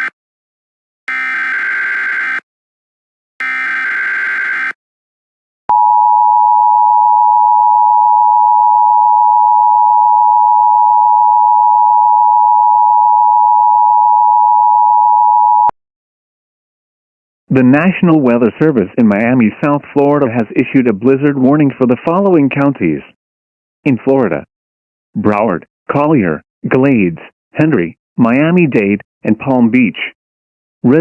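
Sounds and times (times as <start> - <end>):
buzzy digital squawks: 3.4 - 4.8.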